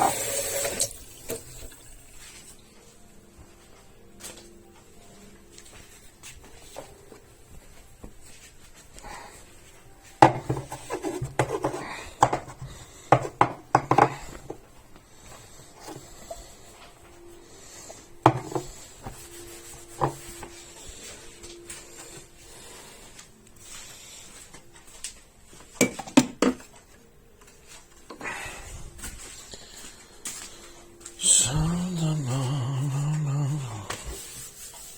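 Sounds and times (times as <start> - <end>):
objects clattering on a counter: 10.2 - 14.6, 25.8 - 26.7.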